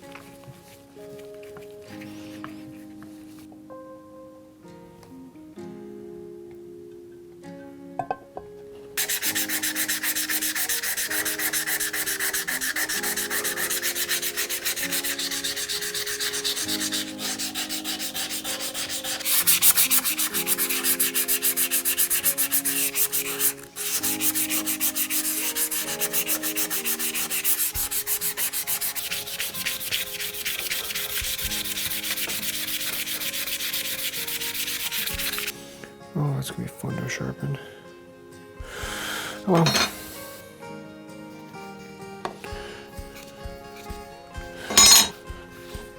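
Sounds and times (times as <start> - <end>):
abrasive rubbing on metal: 9.0 - 35.5, 44.7 - 45.2.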